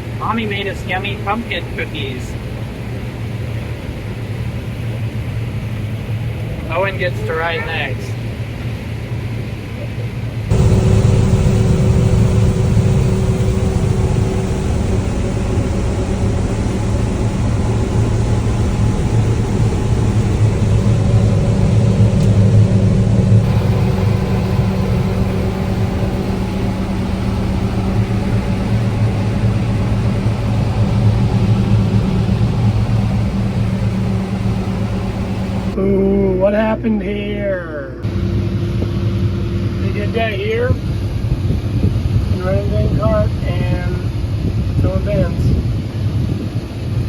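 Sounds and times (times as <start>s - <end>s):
farm machine engine humming: 10.5s - 35.8s.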